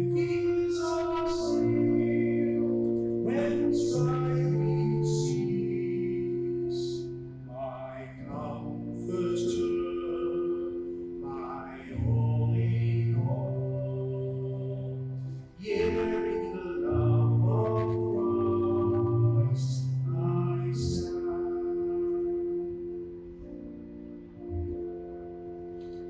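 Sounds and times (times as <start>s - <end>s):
person singing slow song: 0.0s - 23.7s
held chords: 0.0s - 26.0s
bass line: 12.0s - 22.3s.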